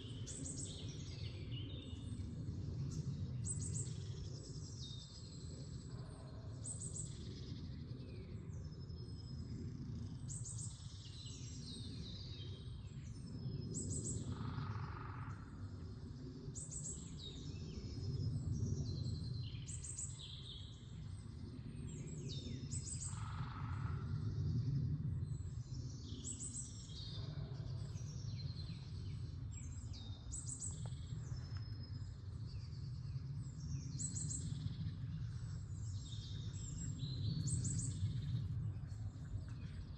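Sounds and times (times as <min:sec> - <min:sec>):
songbirds chirping: 0:00.0 - 0:39.9
steady low rumble: 0:12.8 - 0:39.9.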